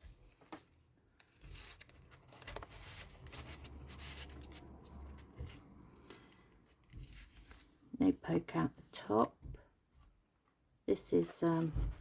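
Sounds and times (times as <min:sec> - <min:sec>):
paper rustling and scraping: 0:00.0 - 0:05.7, 0:06.9 - 0:07.8.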